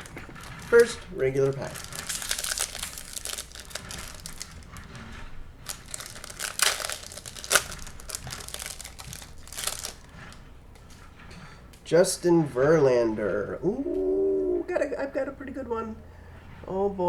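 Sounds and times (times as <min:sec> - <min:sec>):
foil wrapper tearing and crinkling: 0:00.0 - 0:10.4.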